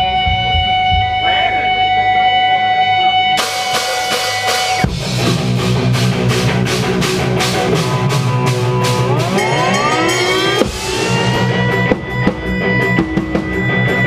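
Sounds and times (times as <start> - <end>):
bass guitar: 0.0 - 14.0
drums beating on cymbals: 3.4 - 14.0
ringing guitar note: 8.6 - 12.4.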